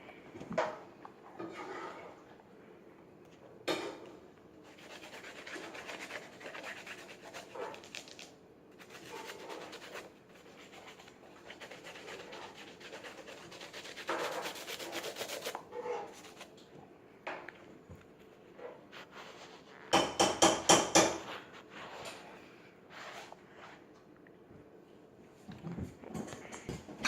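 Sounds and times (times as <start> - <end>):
scrubbing a canvas sneaker: 8.8 - 16.5.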